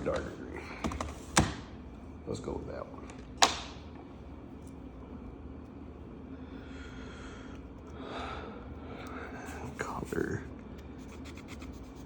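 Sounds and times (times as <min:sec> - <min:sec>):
marker scratching on paper: 0:11.0 - 0:12.0.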